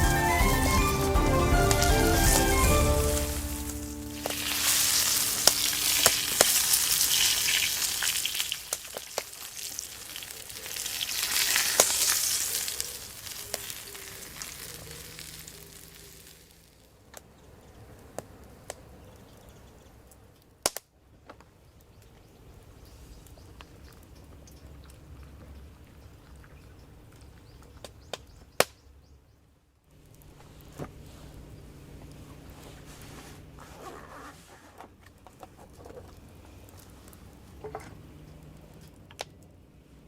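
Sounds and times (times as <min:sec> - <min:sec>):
food sizzling in frying pan: 0:01.6 - 0:16.6.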